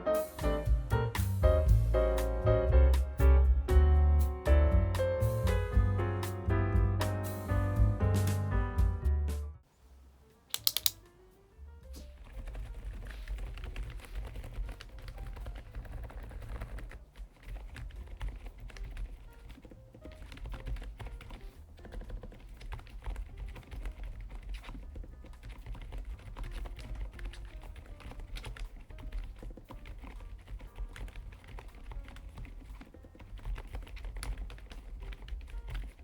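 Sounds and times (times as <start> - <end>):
mechanical keyboard typing: 10.6 - 11.0, 12.1 - 36.0.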